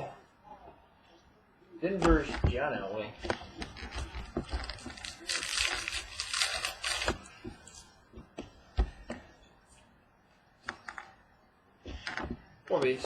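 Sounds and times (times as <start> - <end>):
cards rustling: 3.4 - 7.9.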